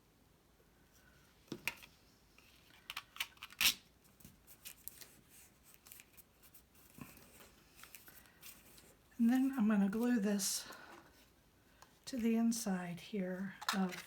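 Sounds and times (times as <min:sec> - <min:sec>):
paper crinkle: 0:02.4 - 0:09.0.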